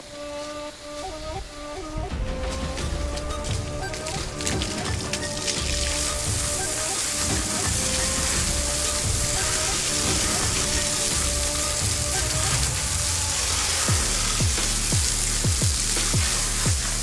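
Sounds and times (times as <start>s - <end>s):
background music with deep bass: 0.0s - 17.0s
steady hiss: 0.0s - 17.0s.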